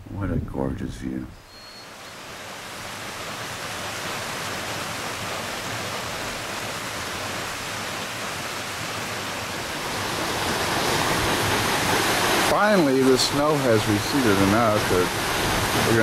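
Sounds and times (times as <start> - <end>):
running water rushing: 1.5 - 16.0.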